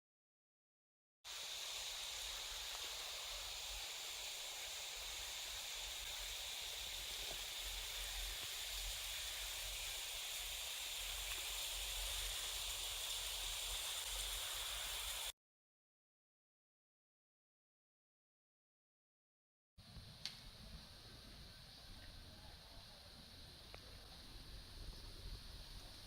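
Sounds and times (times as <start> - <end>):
outdoor hiss: 1.3 - 15.3, 19.8 - 26.0.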